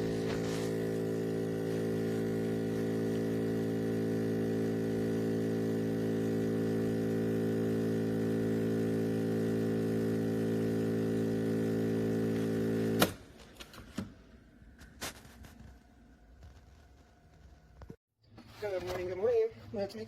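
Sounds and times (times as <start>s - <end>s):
espresso machine buzzing: 0.0s - 13.2s.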